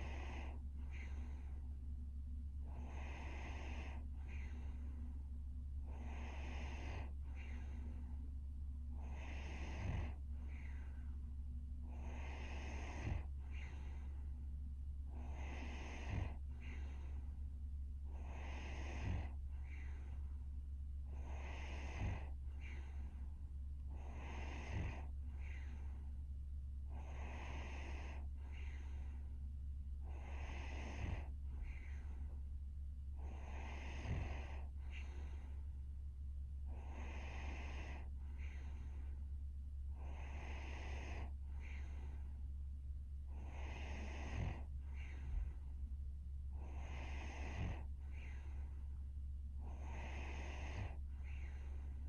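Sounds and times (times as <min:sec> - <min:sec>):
woman snoring: 0:00.0 - 0:01.5, 0:02.6 - 0:04.9, 0:05.8 - 0:07.8, 0:08.9 - 0:10.9, 0:11.8 - 0:14.2, 0:15.1 - 0:17.2, 0:18.1 - 0:20.1, 0:21.1 - 0:23.1, 0:23.9 - 0:25.9, 0:26.9 - 0:29.1, 0:30.0 - 0:32.3, 0:33.2 - 0:35.4, 0:36.7 - 0:39.0, 0:39.9 - 0:42.3, 0:43.3 - 0:45.7, 0:46.5 - 0:48.7, 0:49.6 - 0:52.0
steady low hum: 0:00.0 - 0:52.0.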